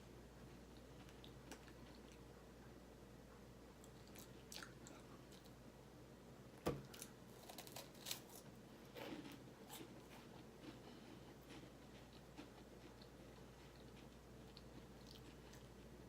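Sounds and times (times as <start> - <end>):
wafer cookie crunching: 6.7 - 16.0.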